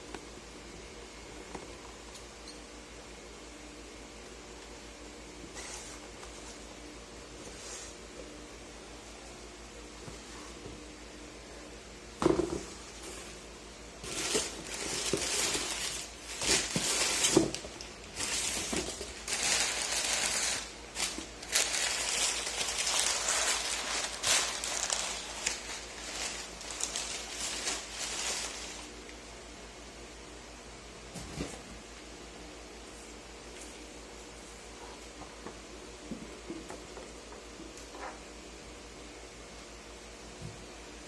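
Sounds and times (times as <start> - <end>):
packaging rustling and crinkling: 14.0 - 29.0.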